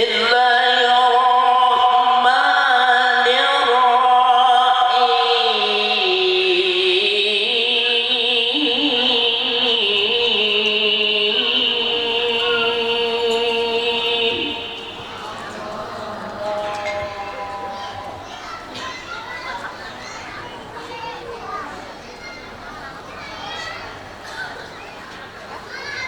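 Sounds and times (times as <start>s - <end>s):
man reciting melodically: 0.0s - 18.4s.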